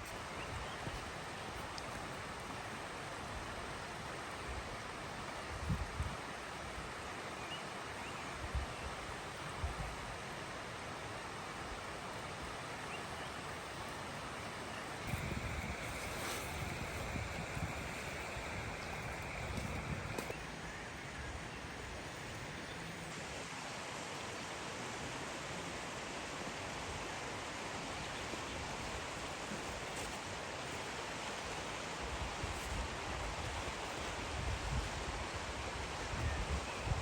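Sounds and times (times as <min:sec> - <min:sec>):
rushing outdoor background noise: 0:00.0 - 0:37.0
wind buffeting microphone: 0:15.0 - 0:20.6.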